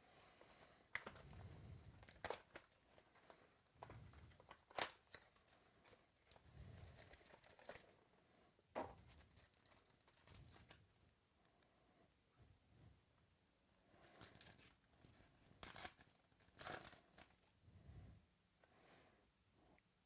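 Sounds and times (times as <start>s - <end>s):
wrappers tearing and crinkling: 0.9s - 3.4s, 4.5s - 7.9s, 9.0s - 10.8s, 14.0s - 17.5s.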